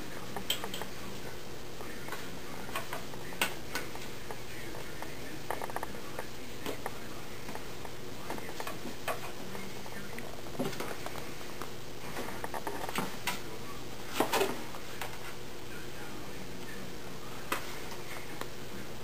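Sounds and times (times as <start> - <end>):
steady low hum: 0.0 - 19.0
kittens playing with light taps: 2.1 - 6.0.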